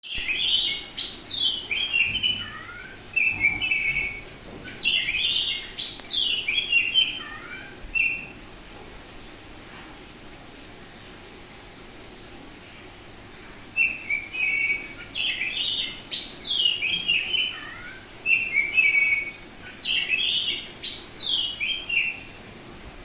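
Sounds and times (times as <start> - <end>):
bird singing whistled song: 0.0 - 8.4, 13.8 - 17.6, 18.2 - 22.3.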